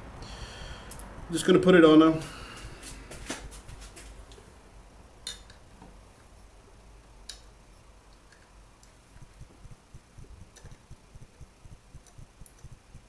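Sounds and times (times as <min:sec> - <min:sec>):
faint ticks: 0:08.1 - 0:13.0.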